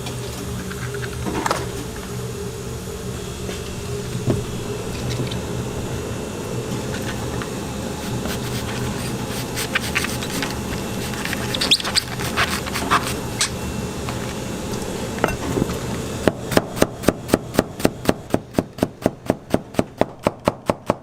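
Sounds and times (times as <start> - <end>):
steady low hum: 0.0 - 21.0
utensils scraping cookware: 8.0 - 14.4.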